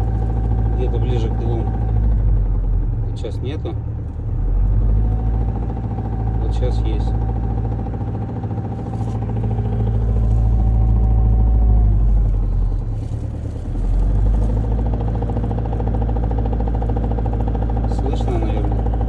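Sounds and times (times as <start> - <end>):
car engine running with knock: 0.0 - 19.0.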